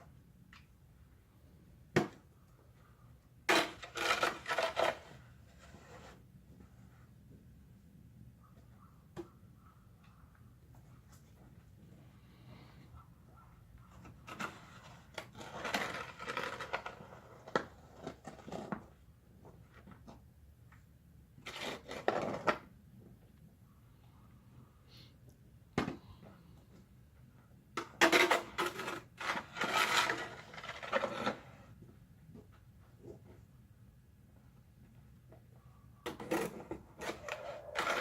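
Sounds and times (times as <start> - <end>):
clattering and scraping of objects: 3.4 - 6.8, 13.9 - 20.3, 21.4 - 22.7, 27.7 - 33.5.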